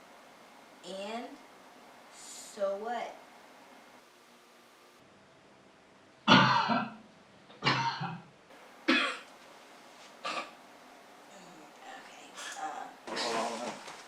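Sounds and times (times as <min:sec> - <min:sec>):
person coughing: 0:06.3 - 0:07.0, 0:07.6 - 0:08.2, 0:08.9 - 0:09.3, 0:10.2 - 0:10.6.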